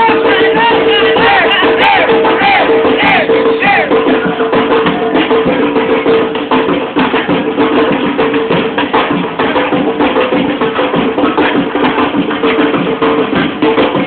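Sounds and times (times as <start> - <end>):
latin percussion music: 0.0 - 14.0.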